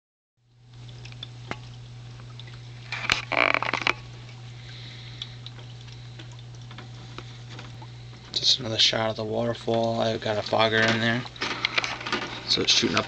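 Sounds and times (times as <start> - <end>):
trickling water: 0.4 - 13.0
waterfall pump humming: 0.4 - 13.0
clicks and scraping: 2.9 - 4.0, 10.4 - 13.0.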